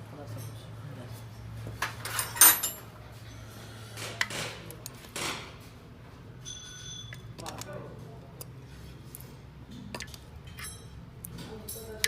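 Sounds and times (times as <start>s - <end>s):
metal tools clinking and clattering: 1.8s - 2.9s.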